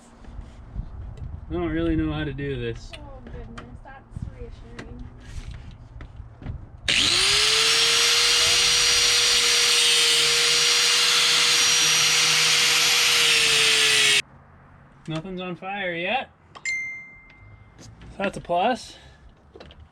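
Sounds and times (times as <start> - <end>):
cutoff wheel grinding metal: 6.9 - 14.2.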